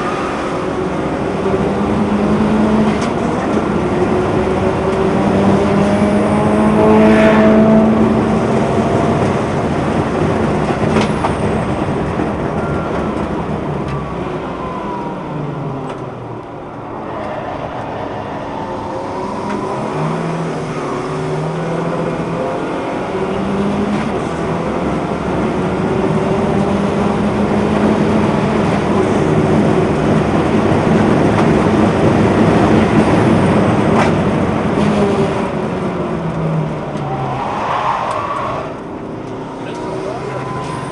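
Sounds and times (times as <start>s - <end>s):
car engine revving: 0.0s - 11.0s.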